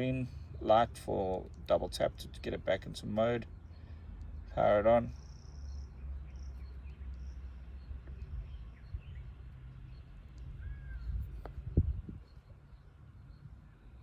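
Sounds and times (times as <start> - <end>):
low steady rumble: 0.0 - 14.0
faint bird chirps: 3.5 - 14.0.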